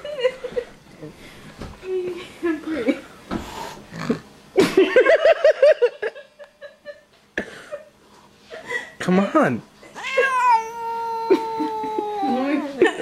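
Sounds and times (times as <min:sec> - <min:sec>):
cat snort-growling: 0:03.5 - 0:04.3.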